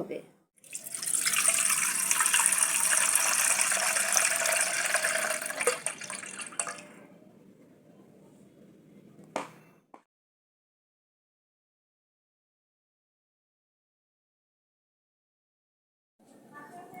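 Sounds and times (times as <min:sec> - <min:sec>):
liquid pouring: 0:00.6 - 0:07.0.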